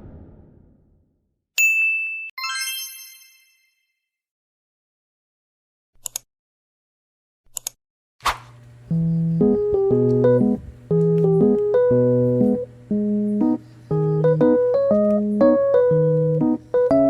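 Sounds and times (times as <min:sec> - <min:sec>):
bright bell-like dings: 0:01.6 - 0:03.9
short clicks: 0:06.0 - 0:06.3, 0:07.5 - 0:08.5.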